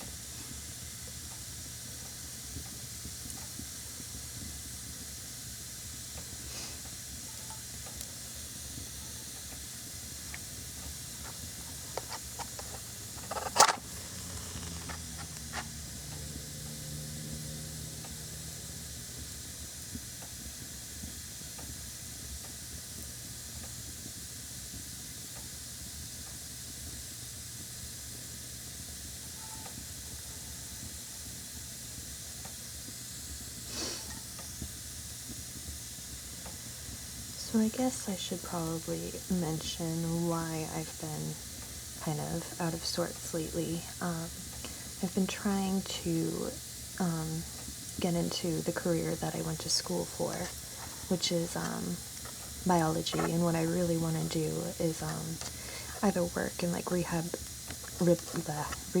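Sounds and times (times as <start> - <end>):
steady hiss: 0.0 - 59.0
match struck on box: 11.2 - 15.7.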